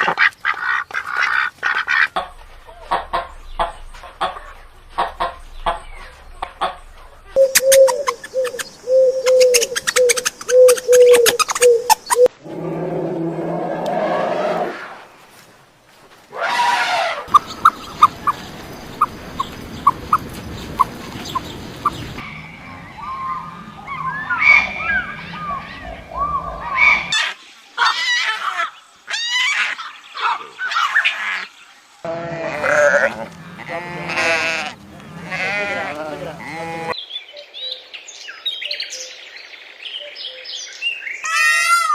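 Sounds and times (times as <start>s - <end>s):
chickens clucking: 0.0s - 12.3s, 17.3s - 22.2s
animal low rough call: 1.9s - 9.8s
bird chirps: 2.2s - 12.3s, 17.3s - 27.1s, 37.0s - 41.3s
loud pitched animal calls: 7.4s - 15.0s, 32.1s - 37.0s.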